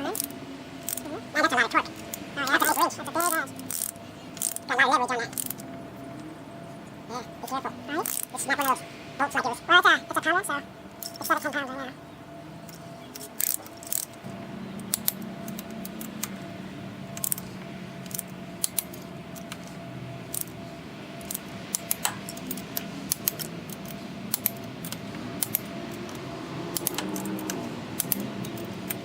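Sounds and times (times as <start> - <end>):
faint steady hum: 0.0 - 29.0
torque wrench ratcheting clicks: 0.9 - 1.1, 2.0 - 5.6, 8.0 - 8.8, 12.7 - 14.2, 14.8 - 16.4, 17.2 - 19.7, 20.3 - 20.5, 21.2 - 29.0.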